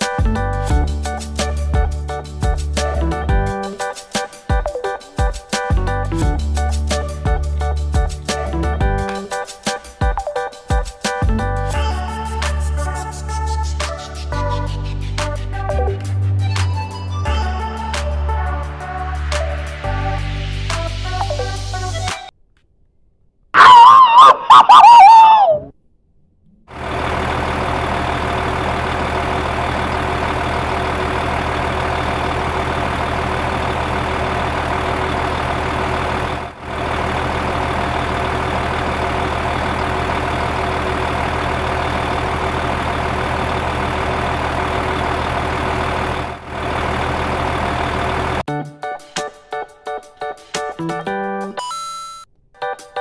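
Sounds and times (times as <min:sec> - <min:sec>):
engine idling: 0:26.7 - 0:48.5.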